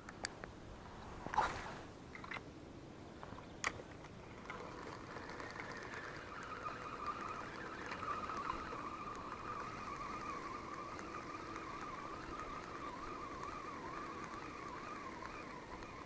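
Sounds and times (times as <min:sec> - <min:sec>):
swish: 0:01.1 - 0:02.0
reel click: 0:03.6 - 0:16.0
spinning reel cranking whir: 0:04.2 - 0:16.0.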